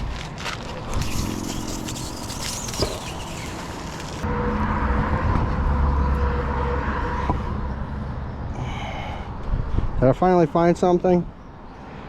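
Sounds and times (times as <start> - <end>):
vehicle engine rumbling: 0.0 - 9.0.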